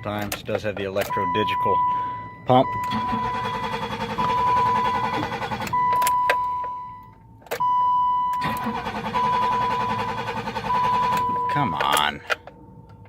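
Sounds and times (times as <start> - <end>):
car starter cranking engine: 2.8 - 6.2, 8.4 - 12.1.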